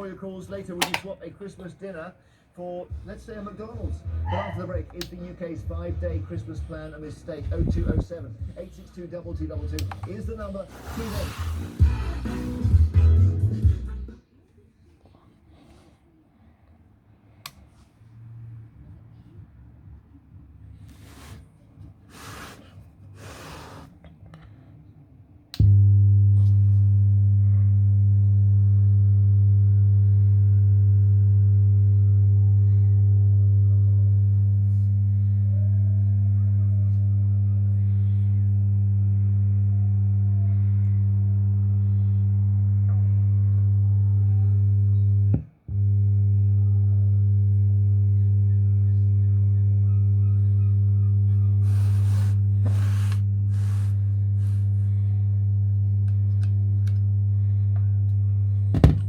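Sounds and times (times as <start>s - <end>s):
speaker crackles: 0.0s - 1.9s, 2.9s - 13.0s
speakers buzzing hum: 0.0s - 59.0s.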